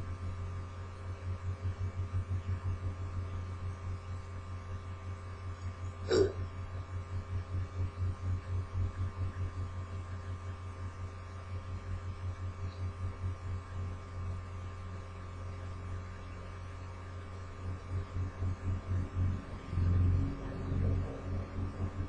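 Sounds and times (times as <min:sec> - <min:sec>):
faint thin whine: 0:00.0 - 0:22.0
pulsing electrical hum: 0:00.0 - 0:22.0.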